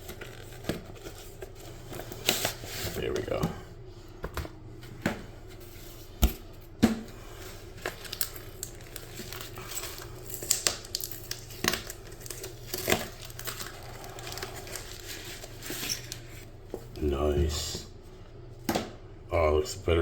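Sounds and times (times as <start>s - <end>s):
packaging crinkling and rustling: 0.0s - 3.4s, 7.3s - 17.0s.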